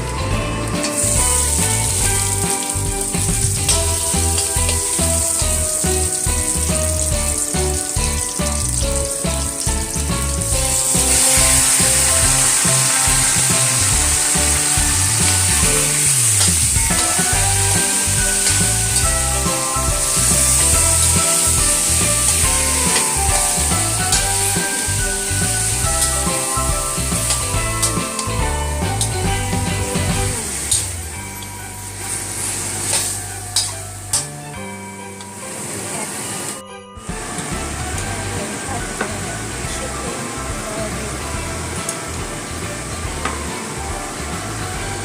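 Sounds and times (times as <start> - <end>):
background music with steady beat: 0.0 - 35.5, 36.5 - 45.0
food sizzling in hot oil: 0.8 - 30.9.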